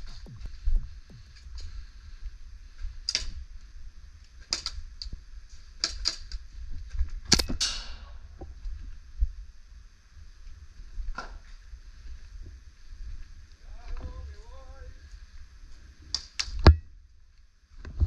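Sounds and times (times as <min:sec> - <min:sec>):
low rumble: 0:00.0 - 0:05.4.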